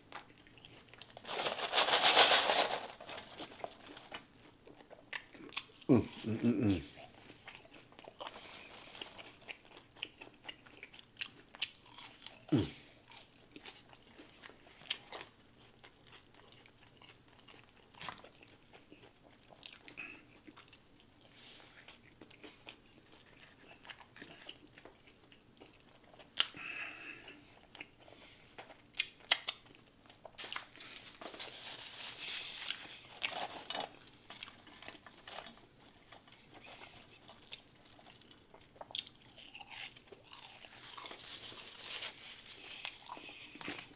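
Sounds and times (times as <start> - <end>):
person chewing and biting: 7.1 - 15.3, 36.3 - 43.9.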